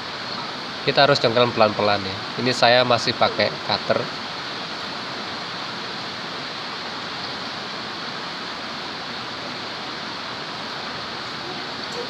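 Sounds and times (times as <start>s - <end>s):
heavy rain hiss: 0.0s - 12.0s.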